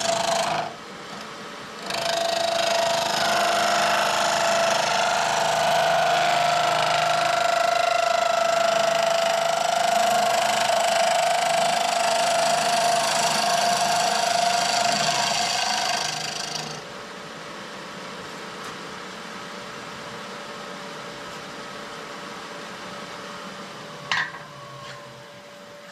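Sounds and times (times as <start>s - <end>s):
turning tool cutting wood: 0.0s - 0.8s, 1.8s - 16.8s
wood lathe whining: 0.0s - 0.8s, 1.8s - 16.9s.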